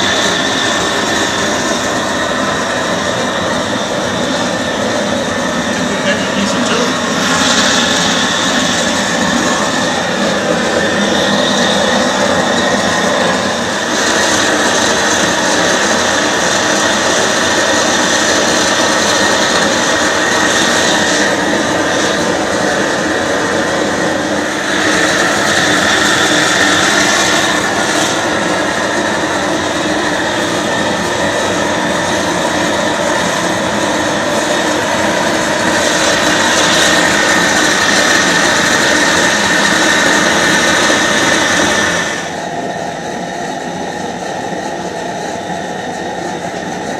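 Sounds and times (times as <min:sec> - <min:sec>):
gas torch flame hissing: 0:00.0 - 0:33.3.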